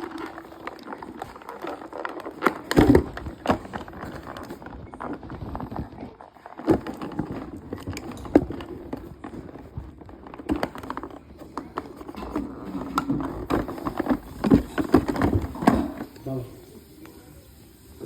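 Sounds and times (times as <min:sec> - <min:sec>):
toy packaging being handled: 0:00.0 - 0:17.0.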